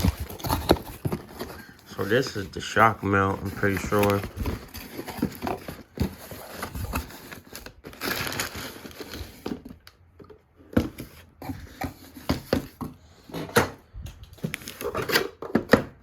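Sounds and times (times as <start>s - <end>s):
packaging crinkling and rustling: 0.0s - 10.0s, 14.2s - 16.0s.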